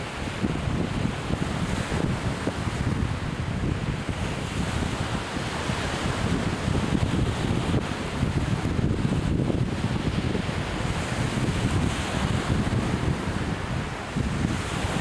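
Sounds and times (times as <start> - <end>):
surf washing on beach: 0.0 - 15.0
wind buffeting microphone: 0.0 - 15.0.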